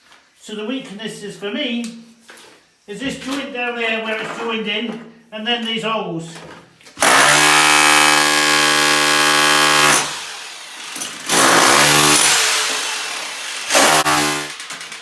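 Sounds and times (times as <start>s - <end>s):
power tool motor on concrete: 7.0s - 14.8s.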